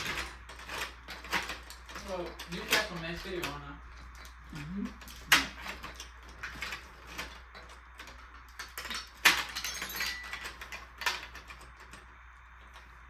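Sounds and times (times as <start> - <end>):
marbles clattering through marble run: 8.4 - 11.8.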